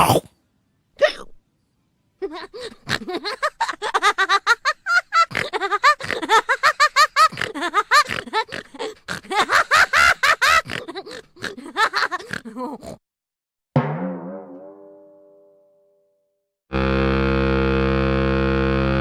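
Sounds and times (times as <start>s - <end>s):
high-pitched laughter: 2.2s - 13.0s.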